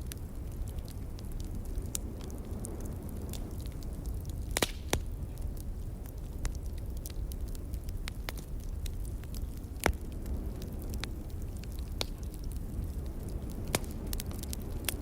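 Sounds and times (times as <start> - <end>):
low rumble of wind: 0.0 - 15.0
wood fire crackling: 0.0 - 15.0.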